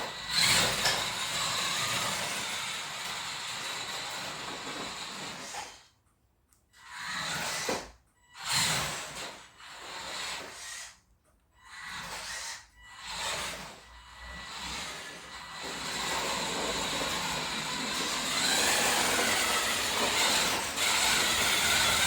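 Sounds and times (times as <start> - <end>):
plastic wheels rolling: 0.0 - 5.9, 14.4 - 22.0
small electric motor whirring: 6.8 - 11.0, 11.6 - 22.0.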